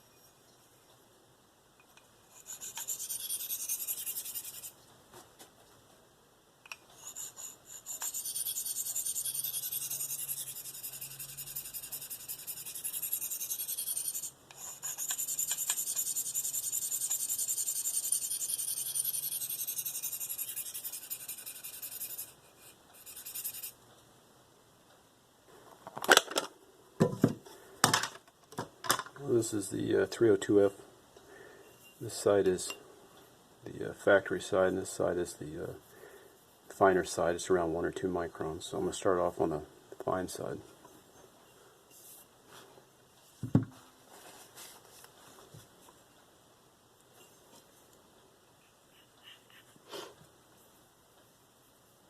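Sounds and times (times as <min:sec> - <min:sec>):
knife scraping on sharpening stone: 0:02.3 - 0:04.8, 0:07.0 - 0:23.8.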